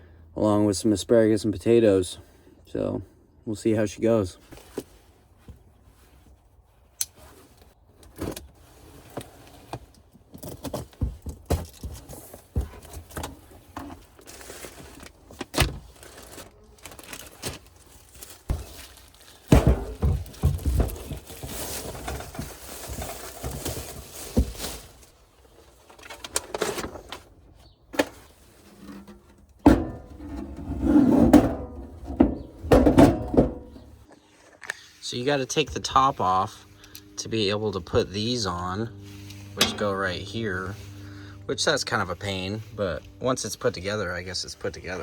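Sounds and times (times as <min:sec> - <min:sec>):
packaging rustling and scraping: 0:07.2 - 0:34.6.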